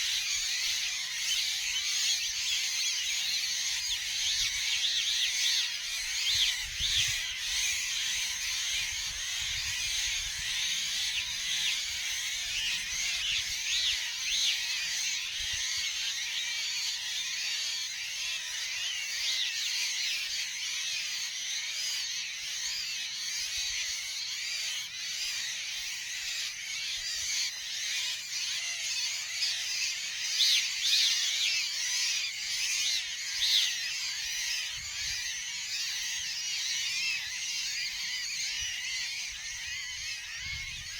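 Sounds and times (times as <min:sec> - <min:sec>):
birds chattering: 0:00.0 - 0:40.9.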